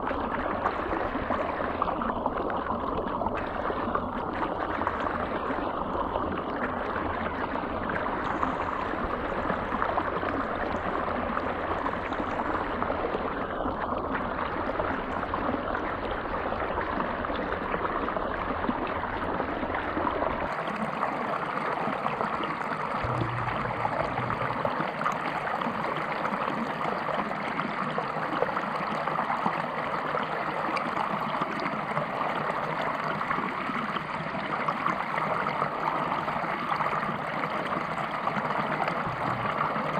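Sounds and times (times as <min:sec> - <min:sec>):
deep water rumble: 0:22.2 - 0:26.0, 0:38.6 - 0:39.9.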